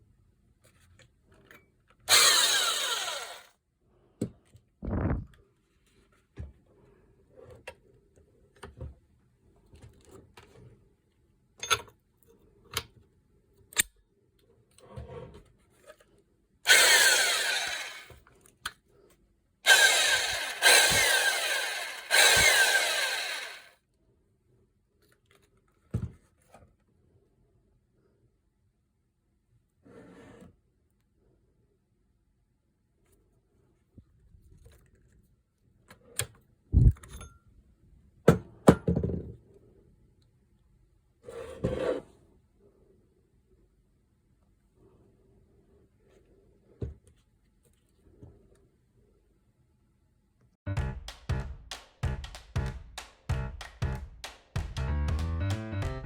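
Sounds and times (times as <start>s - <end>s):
electric motor whirring: 2.1s - 3.5s, 16.7s - 18.1s, 19.7s - 23.7s.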